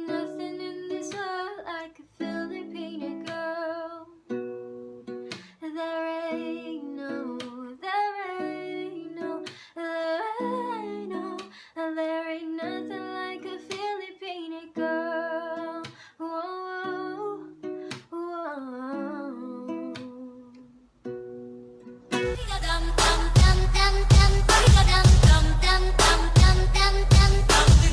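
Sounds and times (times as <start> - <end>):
plucked strings: 0.0 - 9.6, 18.8 - 27.9.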